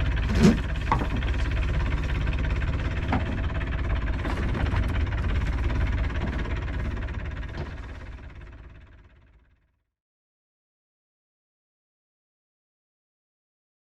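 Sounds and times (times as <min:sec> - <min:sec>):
boat diesel engine idling: 0:00.0 - 0:09.7.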